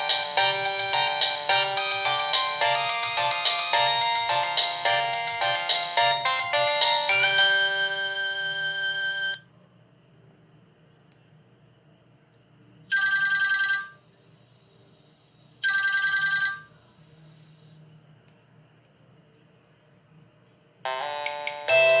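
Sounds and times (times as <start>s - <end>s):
held ringtone chord: 0.0s - 9.4s, 20.9s - 22.0s
phone ringtone trilling bell: 0.0s - 9.4s, 15.7s - 16.7s, 20.9s - 22.0s.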